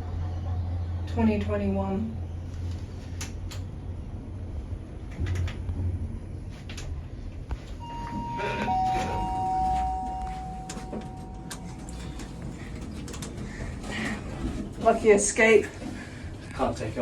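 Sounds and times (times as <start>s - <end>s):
lift two-note arrival chime: 7.8s - 12.3s.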